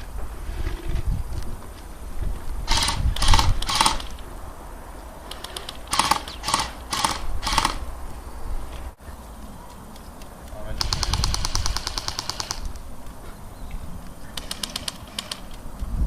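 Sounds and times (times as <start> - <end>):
airsoft gun firing bursts: 2.7 - 4.1, 5.3 - 7.8, 10.8 - 12.8, 14.4 - 15.5.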